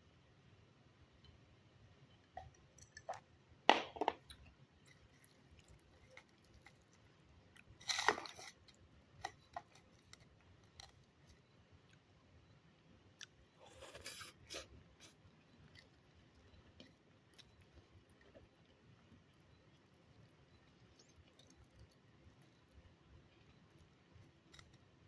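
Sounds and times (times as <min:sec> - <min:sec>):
wet mouth clicks and chewing: 0:13.2 - 0:24.9.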